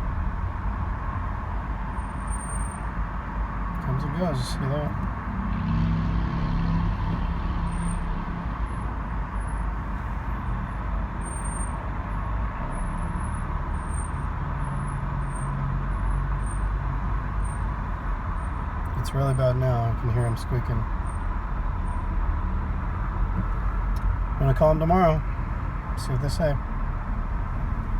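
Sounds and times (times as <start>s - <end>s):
car road noise: 0.0s - 27.9s
high-pitched brake squeals: 2.0s - 2.8s, 7.6s - 8.1s, 11.2s - 11.8s, 12.7s - 15.6s.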